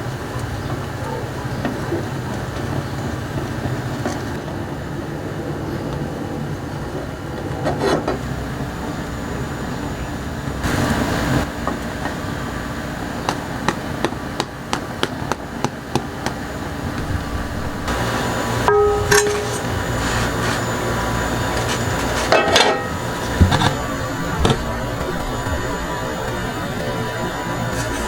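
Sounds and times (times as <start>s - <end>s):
steady low hum: 3.9s - 10.4s, 16.6s - 28.0s.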